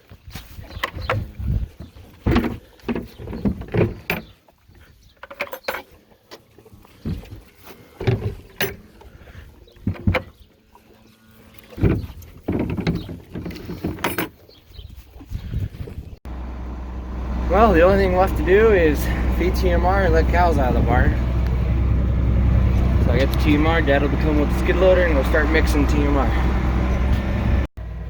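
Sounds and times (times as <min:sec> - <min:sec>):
buckets knocking and scraping: 0:00.3 - 0:10.5, 0:11.6 - 0:14.4, 0:22.5 - 0:26.6.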